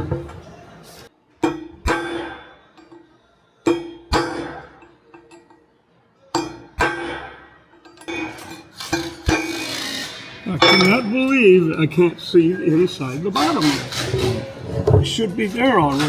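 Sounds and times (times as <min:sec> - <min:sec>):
hammer striking steel chisel: 0:01.4 - 0:03.1, 0:03.7 - 0:05.5, 0:06.4 - 0:11.4.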